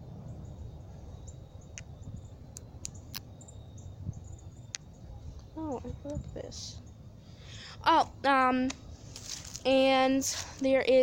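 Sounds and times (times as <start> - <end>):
wind rumble on microphone: 0.0 - 11.0
footsteps outdoors: 8.2 - 11.0
dry debris snapping underfoot: 9.1 - 9.7.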